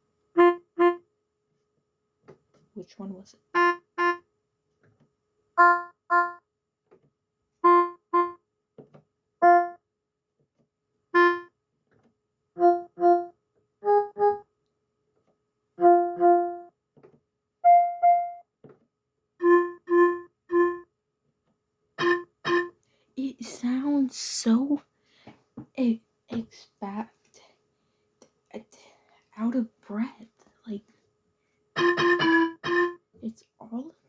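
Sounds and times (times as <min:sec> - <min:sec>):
electronic keyboard short notes: 0:07.6 - 0:08.4, 0:09.4 - 0:09.8, 0:11.2 - 0:11.5, 0:12.6 - 0:14.4, 0:15.8 - 0:16.7, 0:17.6 - 0:18.4, 0:22.0 - 0:22.7, 0:31.8 - 0:33.0.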